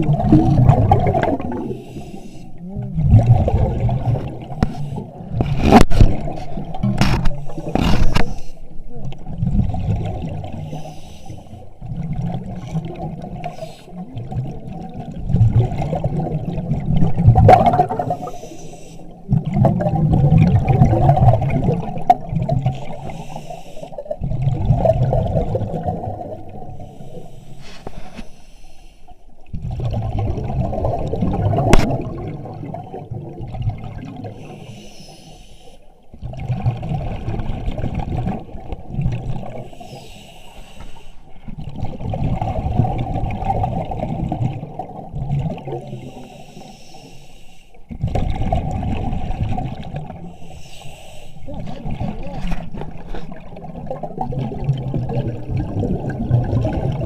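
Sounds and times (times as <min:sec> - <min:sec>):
diver exhaling bubbles underwater: 0:00.0 - 0:08.4, 0:09.1 - 0:28.2, 0:29.4 - 0:34.9, 0:36.1 - 0:40.3, 0:41.4 - 0:46.6, 0:47.9 - 0:50.6, 0:51.4 - 0:57.0.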